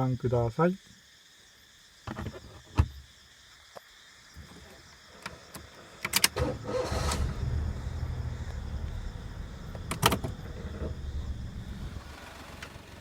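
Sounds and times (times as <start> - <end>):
car engine starting and running: 5.2 - 13.0
clicks and knocks inside car: 9.6 - 13.0.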